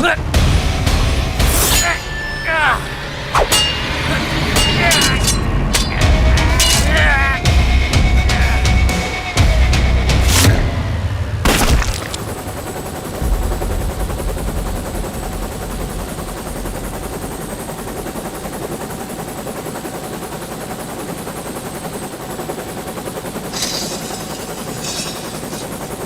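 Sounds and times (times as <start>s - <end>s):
loud bang: 13.2s - 18.4s.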